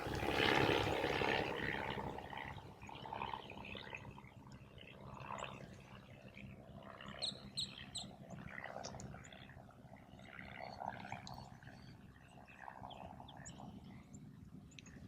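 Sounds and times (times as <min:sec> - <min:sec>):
wild birds chirping: 0:07.1 - 0:08.2.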